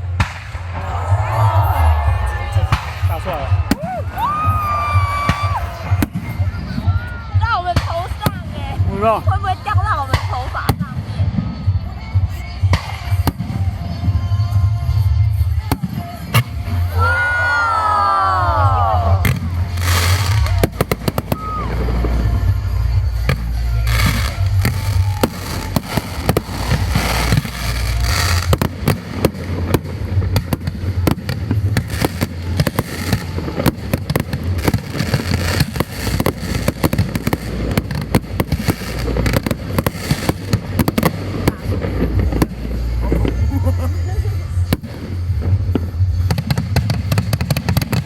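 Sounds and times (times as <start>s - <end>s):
fireworks booming and crackling: 0.0s - 17.0s, 17.9s - 48.0s
fireworks whistles: 19.2s - 29.7s.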